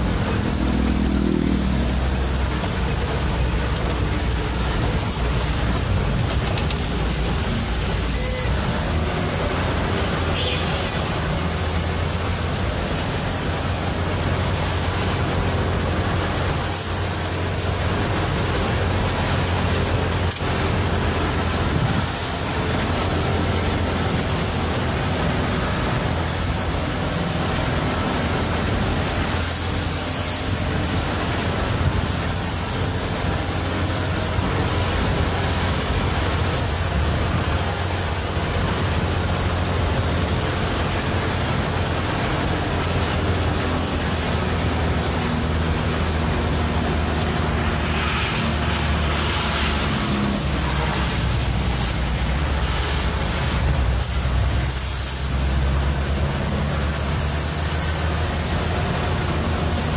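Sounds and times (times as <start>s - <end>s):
high whine: 0.0s - 15.0s
truck engine running: 0.0s - 59.9s
tyres on wet road and rain: 0.0s - 59.9s.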